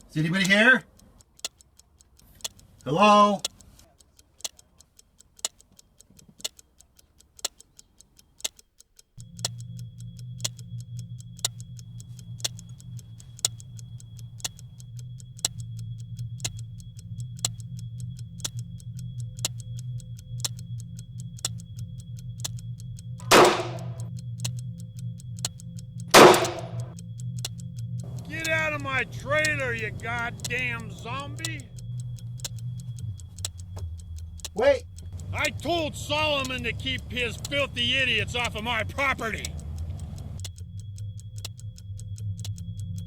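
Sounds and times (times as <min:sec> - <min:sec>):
clock ticking: 0:00.0 - 0:43.0
low steady hum: 0:09.0 - 0:43.0
loud bangs: 0:23.2 - 0:24.0, 0:26.1 - 0:26.9.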